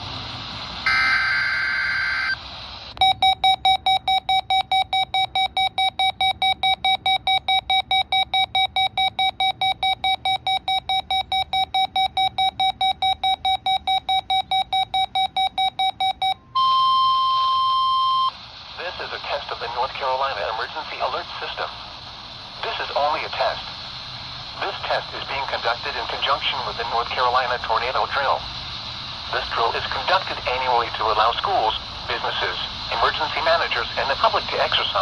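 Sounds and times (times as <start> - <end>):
data tones burst: 0.8 - 2.4, 3.0 - 21.7, 24.6 - 28.2, 29.3 - 35.0
steady radio alert tone: 0.8 - 2.4, 16.6 - 21.8, 22.6 - 23.8, 24.5 - 28.4, 29.2 - 35.0
alert radio alarm beeping: 0.9 - 2.4, 3.0 - 21.6.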